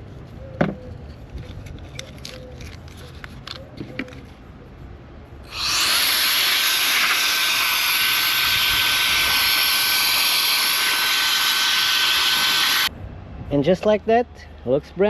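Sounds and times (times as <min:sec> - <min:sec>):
air blower hissing: 0:05.5 - 0:12.9.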